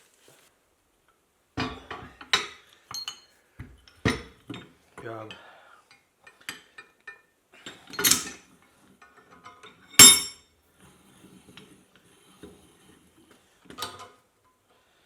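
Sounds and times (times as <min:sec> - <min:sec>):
metal parts clinking and knocking: 0:09.4 - 0:10.4
loud ringing metal clanks: 0:10.0 - 0:10.4.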